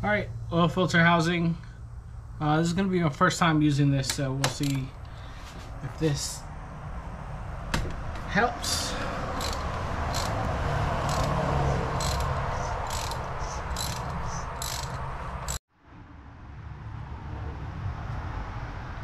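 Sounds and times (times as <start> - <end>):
steady background noise: 0.0 - 15.6
ratchet clicking: 4.1 - 5.1, 8.8 - 15.6.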